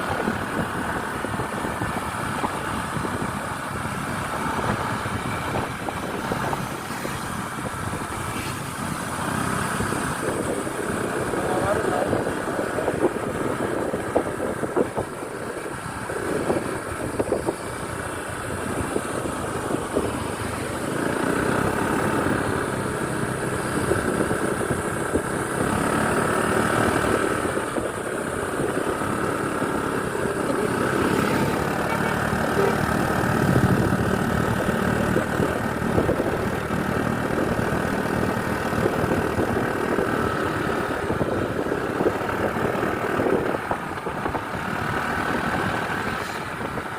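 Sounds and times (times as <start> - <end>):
bus engine running: 0.0 - 46.9.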